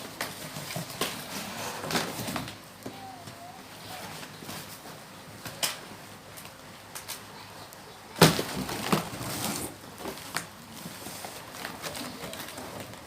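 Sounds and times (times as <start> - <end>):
packing crackling: 8.2 - 13.0.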